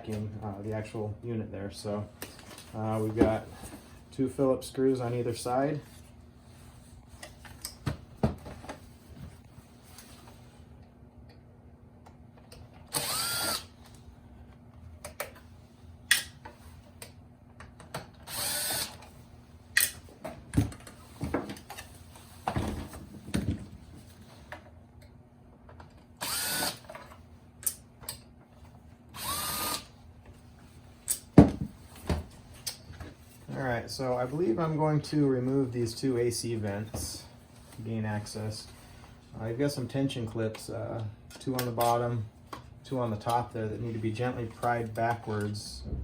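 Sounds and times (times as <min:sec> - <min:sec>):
power screwdriver spinning: 0:12.9 - 0:13.7, 0:18.3 - 0:19.0, 0:26.2 - 0:26.8, 0:29.2 - 0:29.9.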